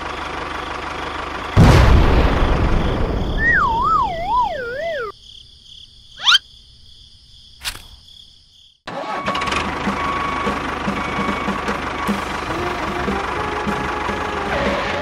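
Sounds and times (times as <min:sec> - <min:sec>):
short rising chirp: 0:03.4 - 0:05.1, 0:06.2 - 0:06.4
warbling downward tone: 0:03.4 - 0:05.1.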